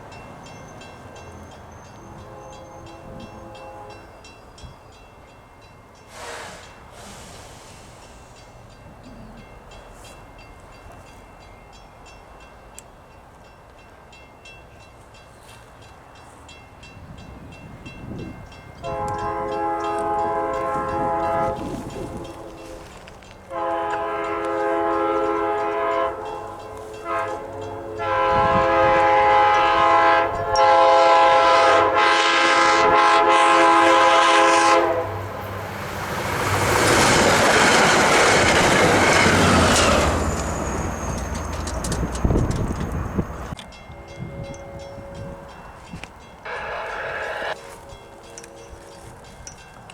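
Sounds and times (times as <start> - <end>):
locomotive air horn blasts: 2.1 - 4.1, 6.1 - 7.8, 18.8 - 35.5, 43.2 - 45.8, 46.4 - 48.7
train wheels and engine rushing: 5.9 - 49.9.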